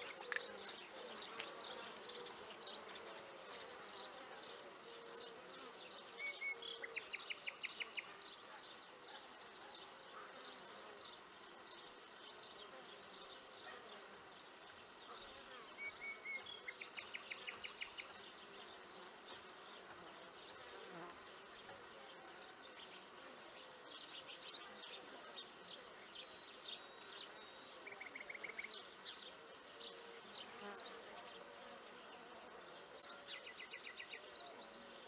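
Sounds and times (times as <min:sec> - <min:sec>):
small birds chirping and singing: 0:00.0 - 0:35.0.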